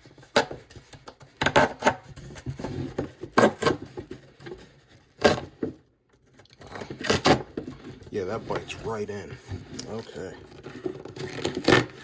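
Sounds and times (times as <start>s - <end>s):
saw blade rasping through cardboard: 0.1s - 4.0s, 5.0s - 5.8s, 10.9s - 12.0s.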